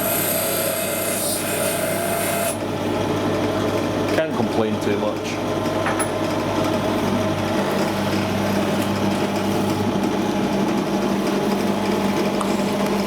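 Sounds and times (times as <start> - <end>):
drill motor humming: 0.0 - 2.8.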